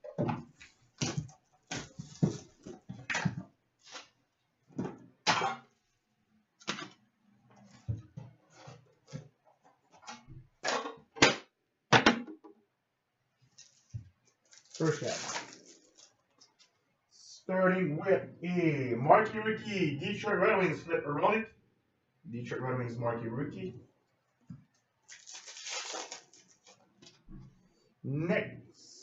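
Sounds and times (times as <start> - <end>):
packaging crinkling and rustling: 13.5 - 16.8, 25.0 - 27.2.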